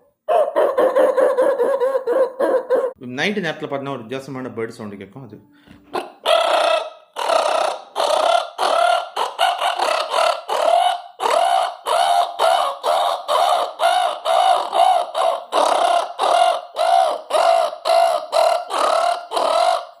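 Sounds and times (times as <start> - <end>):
man imitating bird calls: 5.9 - 20.0.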